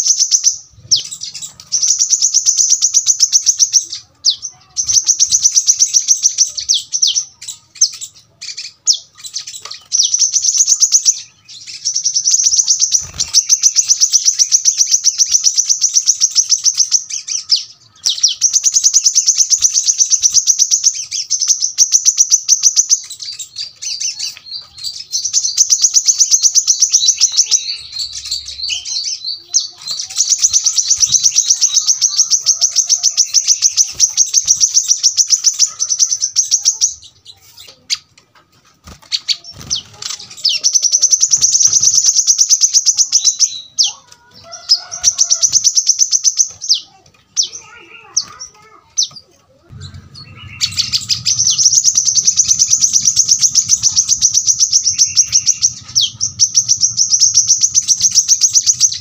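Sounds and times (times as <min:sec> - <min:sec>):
bird singing high-pitched trills: 0:00.0 - 0:38.1, 0:38.8 - 0:59.0.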